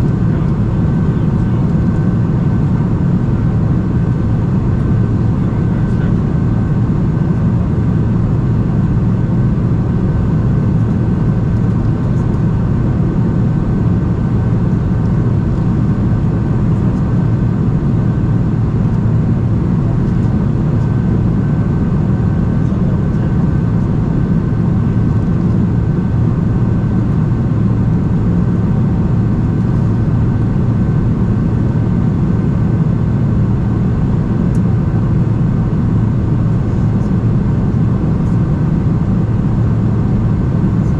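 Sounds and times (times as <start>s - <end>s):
low rumble of aircraft engines: 0.0s - 40.9s.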